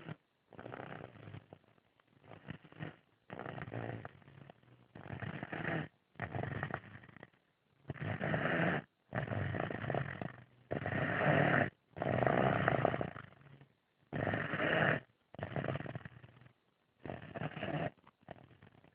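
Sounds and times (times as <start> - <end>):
child snoring: 0.0 - 1.5, 2.3 - 4.2, 7.9 - 13.3, 14.1 - 16.2, 17.0 - 18.8.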